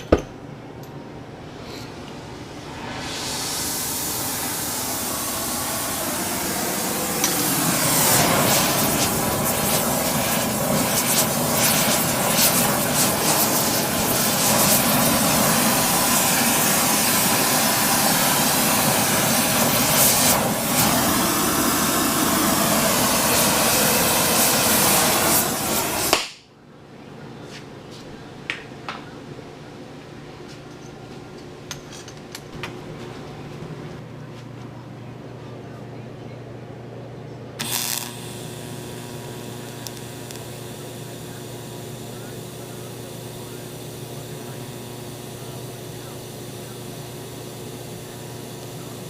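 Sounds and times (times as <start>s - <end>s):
arc welding crackling hiss: 2.8s - 26.4s, 37.6s - 49.0s.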